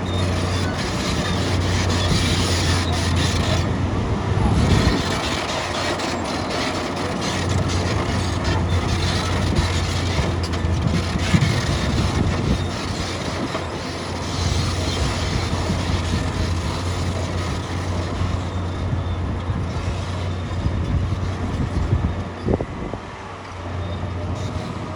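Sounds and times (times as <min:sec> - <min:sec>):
diesel engine droning: 0:00.0 - 0:24.9.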